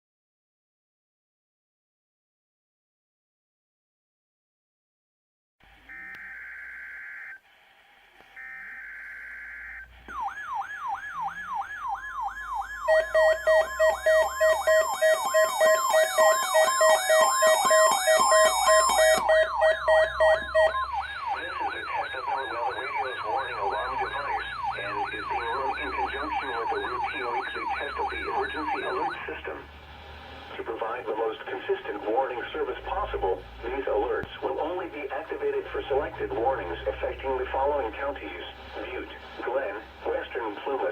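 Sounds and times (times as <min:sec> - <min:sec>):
electronic warning siren sweeping: 0:05.8 - 0:07.4, 0:08.3 - 0:29.8
high warbling alarm tones: 0:05.8 - 0:07.4, 0:08.3 - 0:29.7
pulsing beeps: 0:08.4 - 0:29.4
data header bursts: 0:12.9 - 0:29.4.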